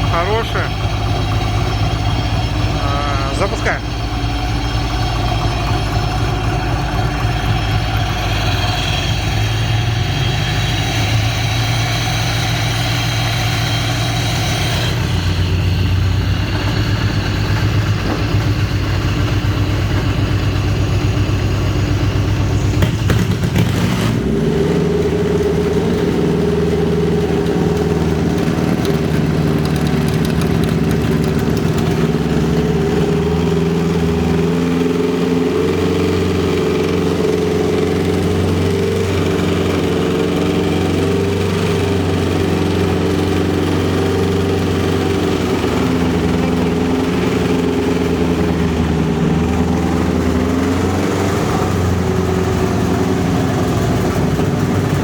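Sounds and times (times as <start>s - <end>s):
car engine running steadily: 0.0s - 55.0s.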